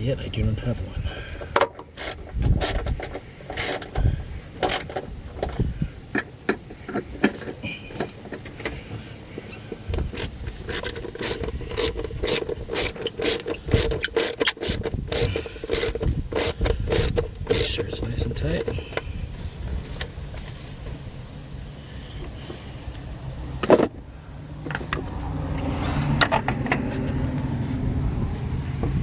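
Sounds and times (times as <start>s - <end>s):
ratchet wrench clicking: 1.7s - 4.0s, 4.6s - 5.0s, 10.1s - 17.8s.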